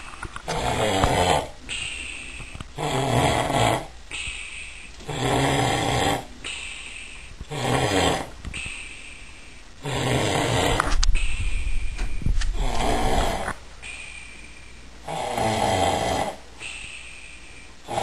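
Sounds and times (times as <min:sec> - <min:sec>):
soft hissing breath: 0:00.0 - 0:02.9, 0:03.8 - 0:15.1, 0:15.9 - 0:18.0
man snoring heavily: 0:00.5 - 0:01.6, 0:02.8 - 0:03.9, 0:05.0 - 0:06.4, 0:07.5 - 0:08.3, 0:09.8 - 0:10.9, 0:12.5 - 0:13.6, 0:15.0 - 0:16.4.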